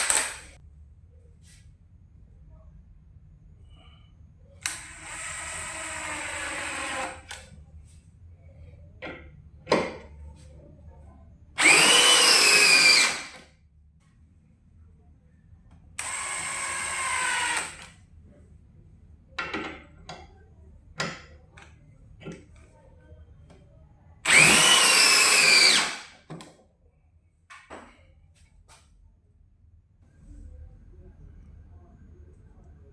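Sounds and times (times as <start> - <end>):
hammer drill running: 0.0 - 0.4, 4.7 - 7.4, 11.6 - 13.4, 16.0 - 17.9, 24.3 - 26.1.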